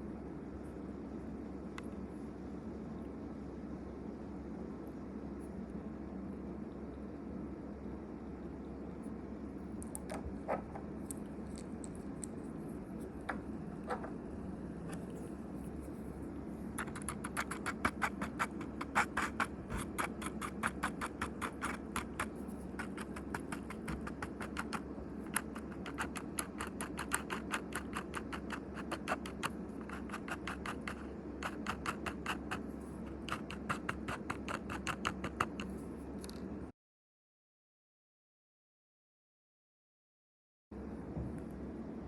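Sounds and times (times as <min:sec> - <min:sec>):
steady low hum: 0:00.0 - 0:36.8, 0:40.7 - 0:42.0
rapid irregular clicking: 0:16.7 - 0:36.4.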